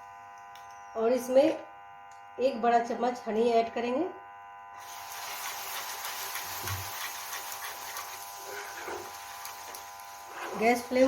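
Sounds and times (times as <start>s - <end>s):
syrup sizzling in a pan: 4.8s - 11.0s.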